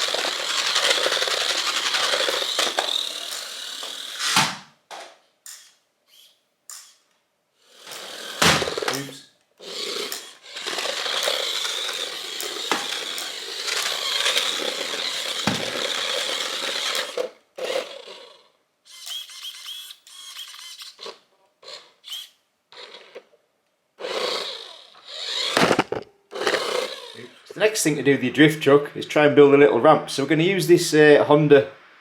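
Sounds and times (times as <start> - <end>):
small electric motor whining: 0.0 - 4.4, 5.5 - 7.0, 7.6 - 23.3, 24.0 - 27.5
toy truck scraping on floor: 0.0 - 4.6, 7.6 - 21.2, 24.0 - 27.4.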